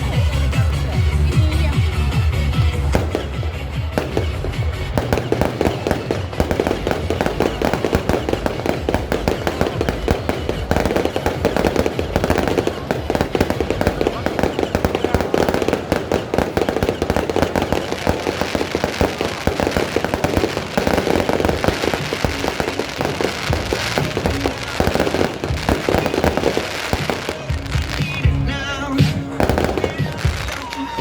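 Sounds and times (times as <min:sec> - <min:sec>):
fireworks bangs and crackles: 0:00.0 - 0:31.0
music: 0:00.0 - 0:31.0.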